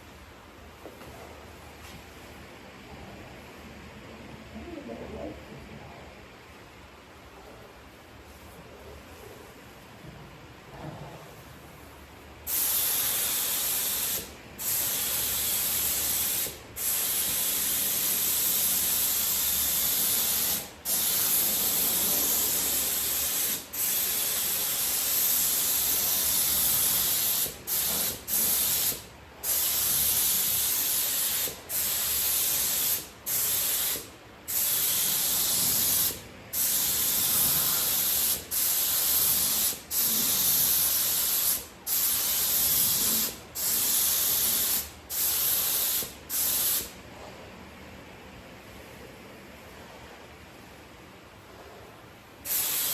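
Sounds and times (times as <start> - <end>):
spray gun hissing: 12.5 - 46.9, 52.5 - 52.9.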